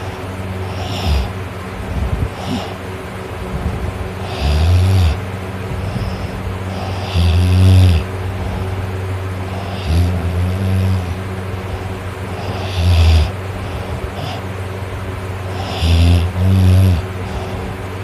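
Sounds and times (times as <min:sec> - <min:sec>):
person snoring: 0:00.0 - 0:01.4, 0:02.1 - 0:02.8, 0:04.2 - 0:08.8, 0:09.5 - 0:14.4, 0:15.5 - 0:17.7
steady low hum: 0:00.0 - 0:18.0.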